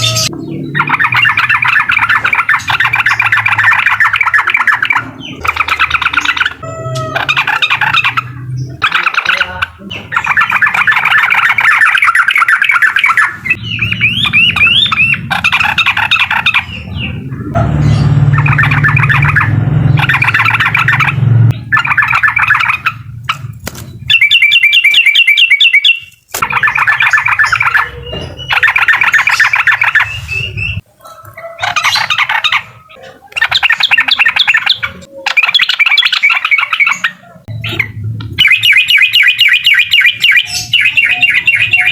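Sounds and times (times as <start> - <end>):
bird trilled chatter: 0.0 - 41.9
low hum: 13.5 - 24.1.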